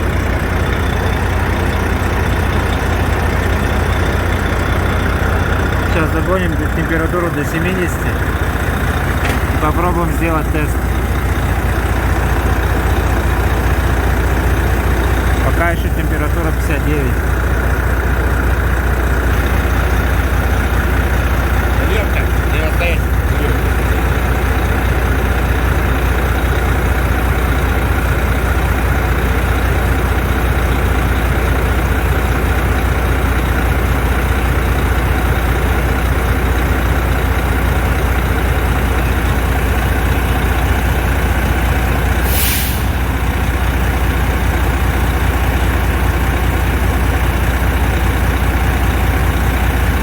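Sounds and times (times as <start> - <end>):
diesel engine idling: 0.0 - 50.0
air hiss: 42.2 - 43.0.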